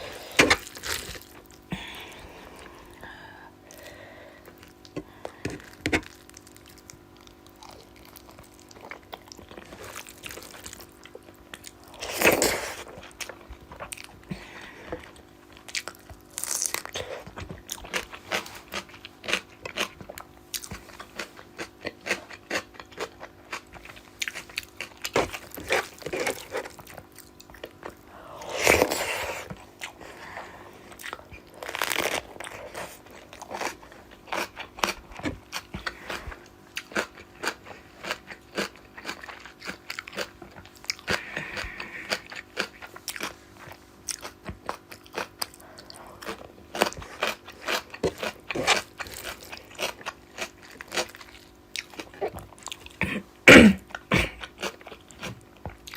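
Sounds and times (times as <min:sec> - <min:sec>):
crunching and chewing food: 0:00.0 - 0:55.9.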